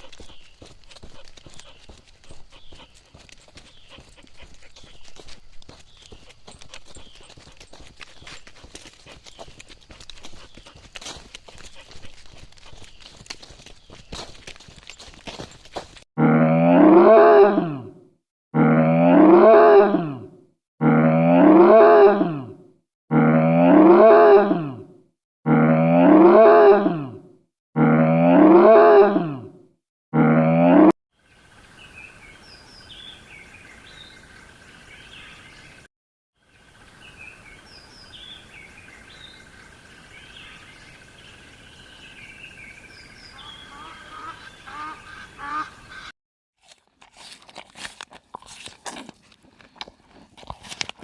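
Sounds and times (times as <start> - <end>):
small birds chirping: 0.0 - 15.8, 36.5 - 46.1.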